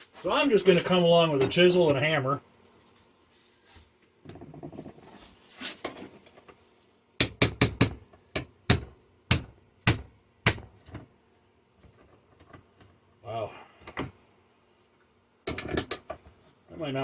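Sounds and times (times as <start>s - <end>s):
hammer striking chisel on metal: 7.2s - 10.7s.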